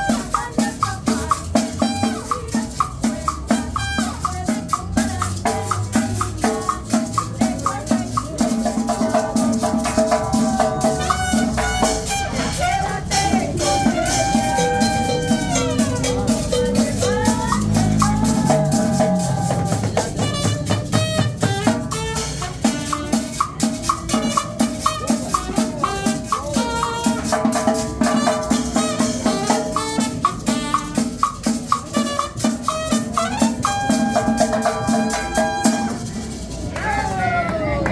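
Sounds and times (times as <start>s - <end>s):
driving drum beat: 0.0s - 36.8s
shaker rattling: 0.0s - 37.4s
sustained melody line: 9.7s - 27.2s.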